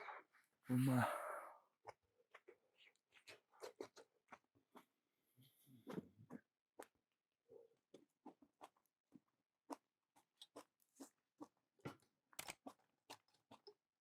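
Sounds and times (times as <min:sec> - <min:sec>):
person chewing food: 0:01.8 - 0:05.0, 0:05.8 - 0:07.0, 0:07.8 - 0:13.8.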